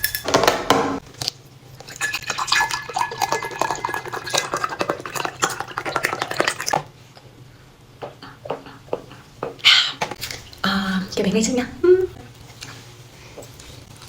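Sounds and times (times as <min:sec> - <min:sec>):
utensils clinking against dishes: 0:00.0 - 0:01.0.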